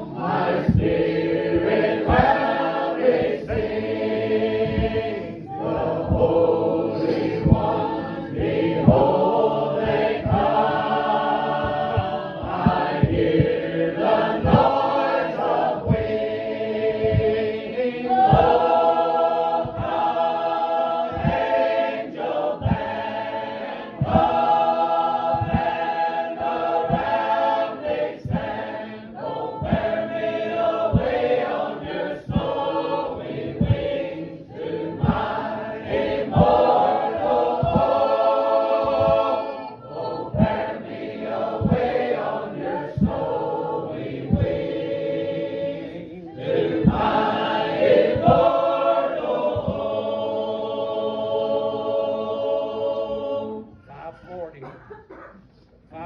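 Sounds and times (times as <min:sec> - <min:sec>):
soft low thumps: 0:00.0 - 0:51.8
group singing a hymn a cappella: 0:00.0 - 0:56.0.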